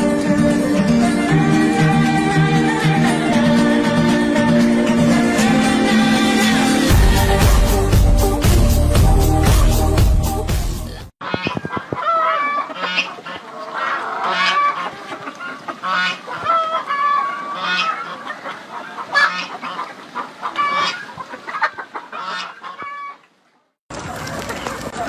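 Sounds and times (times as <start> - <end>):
music: 0.0 - 11.1
poultry squawking and clucking: 11.2 - 23.3.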